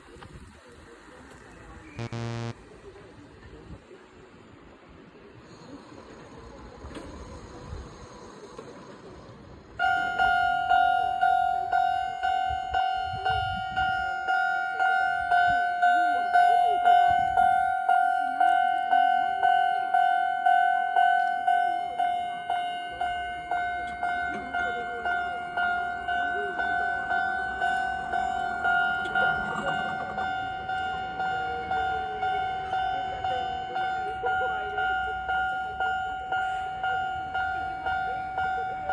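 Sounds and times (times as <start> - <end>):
level crossing warning bell: 2.0 - 2.6, 9.8 - 38.9.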